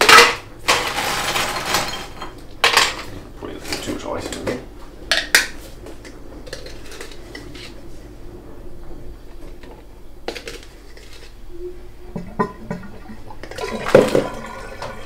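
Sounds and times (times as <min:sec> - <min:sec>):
ice cubes clinking: 0:00.1 - 0:02.9.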